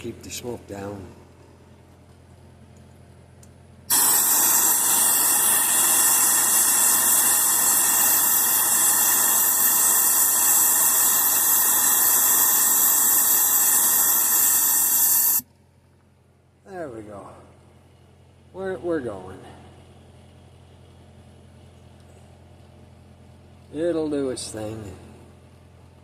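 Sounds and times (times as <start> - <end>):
rushing air hiss: 3.9 - 15.4.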